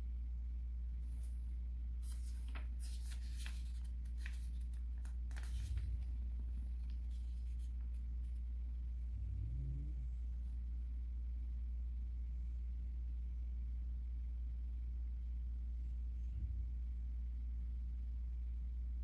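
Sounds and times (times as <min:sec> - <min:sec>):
steady low hum: 0:00.0 - 0:19.0
paper rustling: 0:01.0 - 0:08.5.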